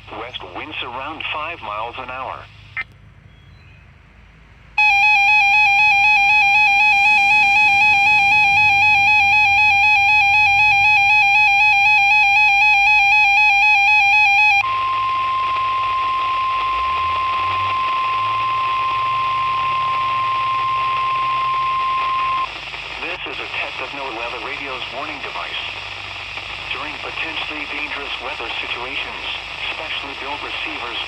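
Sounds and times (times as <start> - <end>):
radio static: 0.0 - 2.9, 4.8 - 31.0
warbling electronic alarm tone: 4.8 - 22.4
steady warning alarm tone: 4.8 - 22.5.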